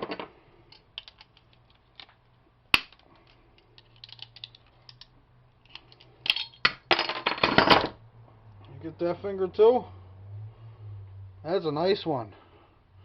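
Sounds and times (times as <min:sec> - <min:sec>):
metal parts and tools clicking: 0:00.0 - 0:02.2, 0:02.9 - 0:06.8.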